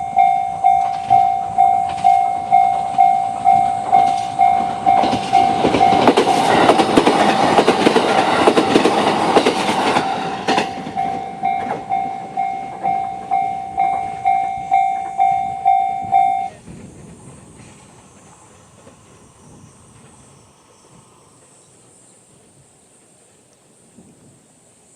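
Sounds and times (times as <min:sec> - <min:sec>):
level crossing bell dinging: 0:00.0 - 0:06.8, 0:10.0 - 0:16.6
train wheels clacking on rails: 0:00.0 - 0:21.6.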